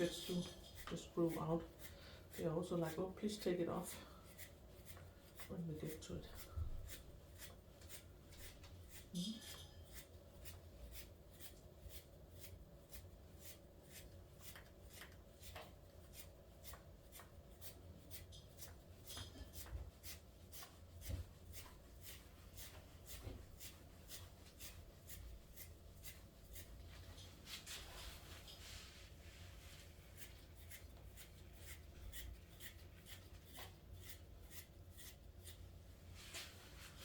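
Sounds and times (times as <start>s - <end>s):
faint scratching strokes: 0.0s - 37.0s.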